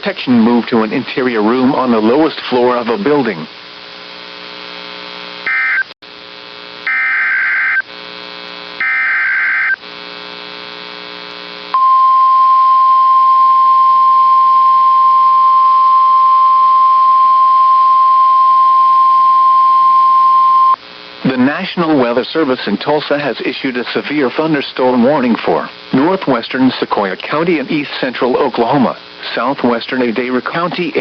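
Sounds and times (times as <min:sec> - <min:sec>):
low radio hum: 0:00.0 - 0:06.9, 0:07.7 - 0:31.0
steady warning alarm tone: 0:05.4 - 0:05.9, 0:06.8 - 0:07.8, 0:08.8 - 0:09.8, 0:11.8 - 0:20.8
warbling digital data bursts: 0:08.8 - 0:09.8.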